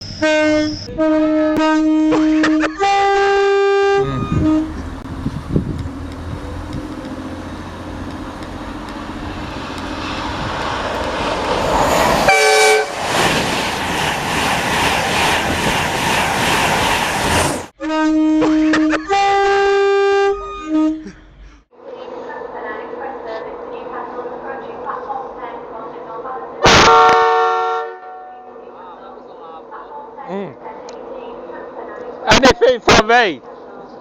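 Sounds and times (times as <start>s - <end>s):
train horn blast: 0.2s - 5.1s, 12.2s - 13.0s, 17.8s - 21.1s, 26.6s - 28.6s
steady horn notes: 0.2s - 5.2s, 12.2s - 13.0s, 17.8s - 21.2s
train passing with rush: 2.2s - 17.8s.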